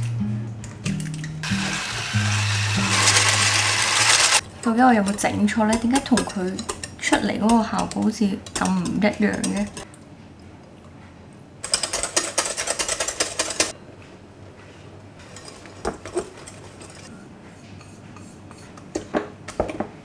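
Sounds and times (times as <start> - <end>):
utensils knocking: 0.0 - 9.9, 11.6 - 13.7.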